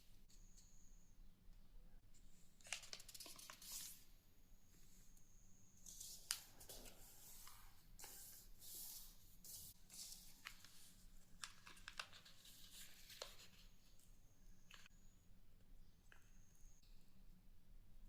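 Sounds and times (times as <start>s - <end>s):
paper rustling and crinkling: 2.6s - 4.0s, 9.9s - 13.9s.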